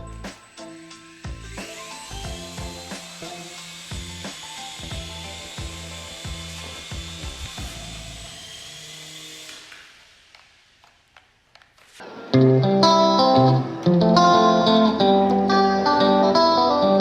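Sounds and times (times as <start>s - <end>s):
loud guitar music: 0.0s - 8.0s, 12.0s - 17.0s
toy helicopter motors whining: 0.3s - 11.4s.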